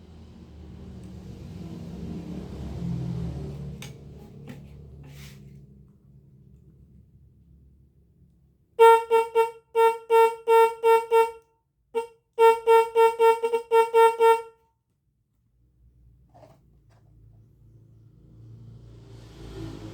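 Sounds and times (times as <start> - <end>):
motorcycle horn honks: 8.8 - 11.4, 12.0 - 14.6.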